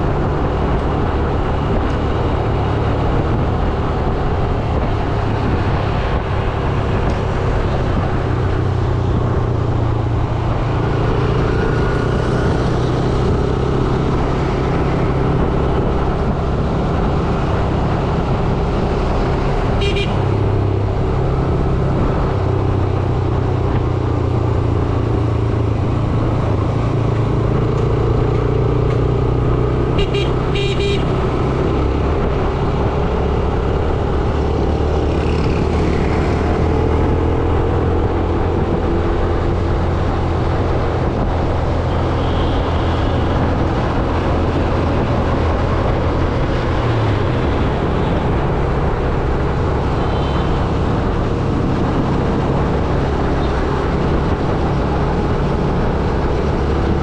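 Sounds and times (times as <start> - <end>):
hum of traffic: 0.0 - 57.0
vehicle horns tooting: 19.8 - 20.4, 30.0 - 31.2.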